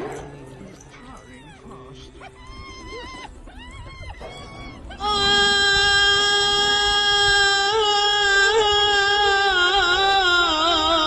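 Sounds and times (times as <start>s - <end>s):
person singing a long note: 5.0s - 11.0s.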